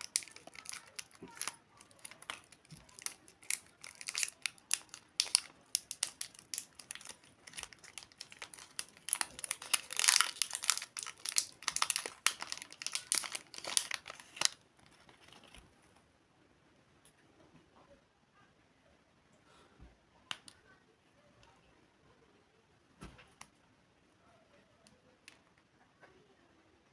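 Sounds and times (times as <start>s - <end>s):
candy wrapper crinkling: 0.0s - 15.6s.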